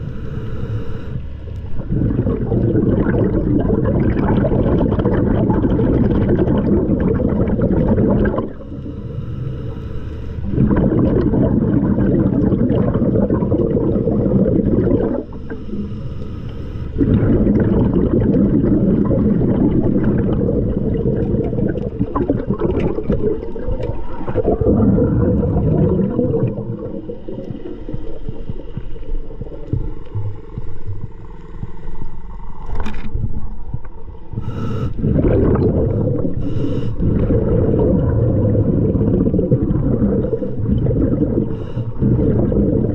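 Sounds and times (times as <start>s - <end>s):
diver breathing through regulator: 0.0s - 3.7s, 7.4s - 22.0s, 34.2s - 42.9s
exhaled air bubbling: 0.0s - 42.9s.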